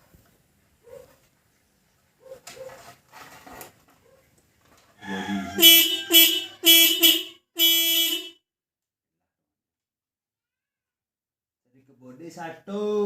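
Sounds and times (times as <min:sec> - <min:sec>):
motorcycle horn beeping: 0:05.4 - 0:08.4.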